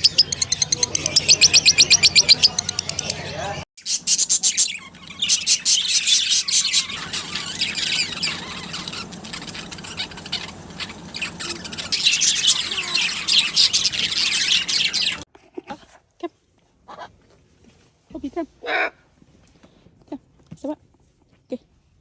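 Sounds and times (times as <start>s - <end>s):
parrots squawking: 0.0s - 15.3s.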